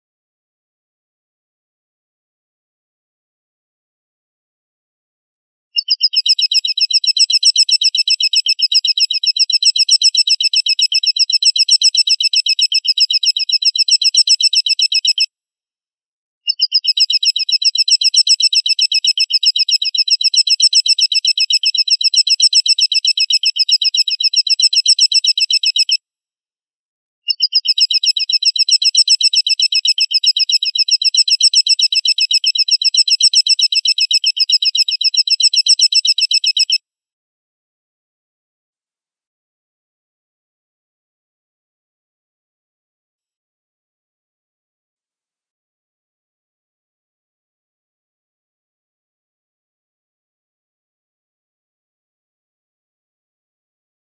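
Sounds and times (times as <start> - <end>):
high fast bird trill: 5.8 - 15.3, 16.5 - 26.0, 27.3 - 36.8.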